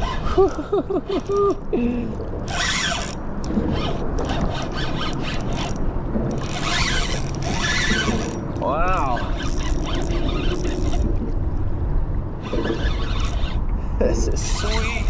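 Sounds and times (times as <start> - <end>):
wind rumble: 0.0 - 15.0
fishing reel drag clicking: 2.5 - 5.8, 6.4 - 8.4, 9.4 - 11.0, 12.4 - 13.6, 14.4 - 15.0.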